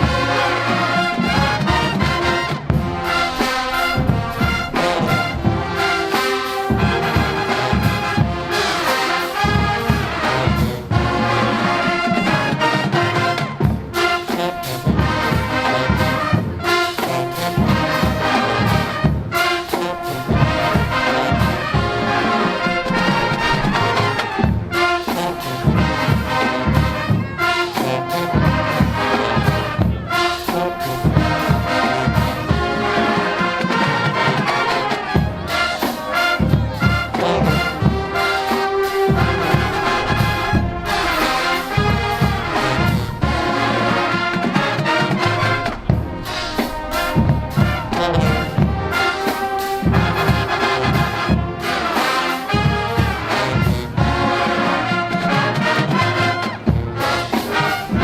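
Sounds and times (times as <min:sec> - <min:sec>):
drumline beat: 0:00.0 - 0:58.0
marching band playing: 0:00.0 - 0:58.0
trumpets and trombones: 0:00.0 - 0:58.0.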